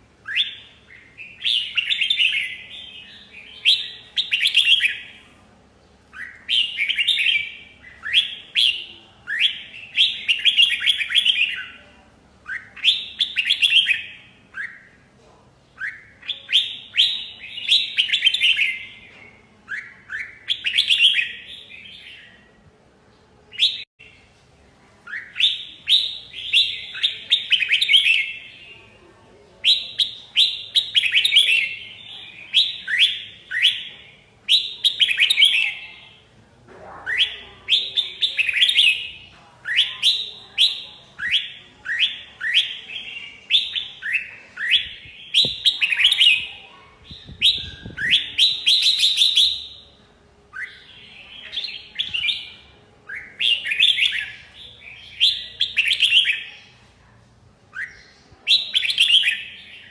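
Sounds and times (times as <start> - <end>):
bird singing whistled phrases: 0.2 - 5.2, 6.1 - 11.8, 12.4 - 15.0, 15.8 - 19.1, 37.1 - 56.5.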